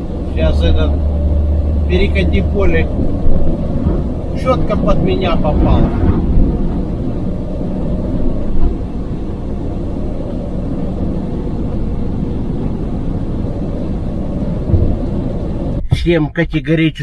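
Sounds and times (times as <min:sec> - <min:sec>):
strong wind: 0:00.0 - 0:16.3
diesel engine drone: 0:00.0 - 0:17.0
road noise: 0:00.0 - 0:17.0
loud thumps: 0:14.7 - 0:15.2.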